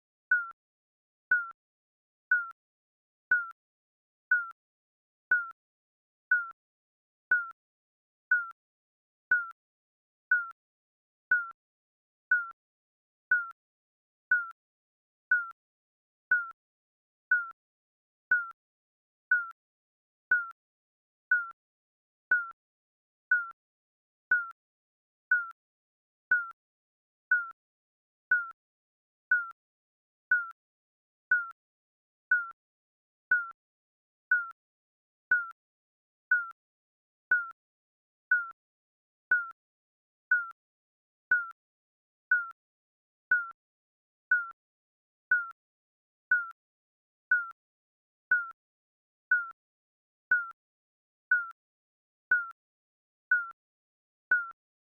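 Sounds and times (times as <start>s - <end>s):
timer beeping: 1.3s - 1.6s, 3.3s - 3.5s, 4.3s - 4.5s, 6.3s - 6.6s, 8.3s - 8.5s, 9.3s - 9.6s, 11.3s - 11.6s, 13.3s - 13.5s, 14.3s - 14.5s, 15.3s - 15.5s, 16.3s - 16.5s, 18.3s - 18.5s, 19.3s - 19.5s, 20.3s - 20.5s, 21.3s - 21.5s, 24.3s - 24.5s, 25.3s - 25.5s, 26.3s - 26.5s, 28.3s - 28.5s, 33.3s - 33.6s, 35.3s - 35.5s, 36.3s - 36.5s, 38.3s - 38.5s, 40.3s - 40.5s, 41.3s - 41.5s, 43.3s - 43.6s, 50.3s - 50.6s.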